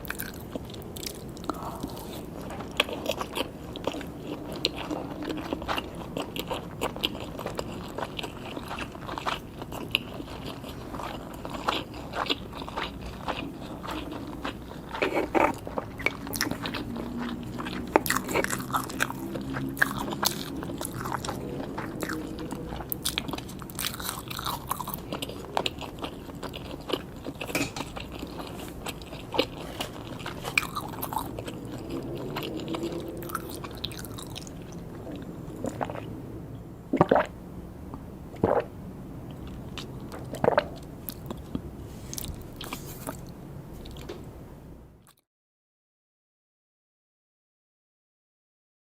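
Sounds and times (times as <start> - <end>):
chewing with crisp crunches: 0.0 - 36.2, 38.4 - 44.2.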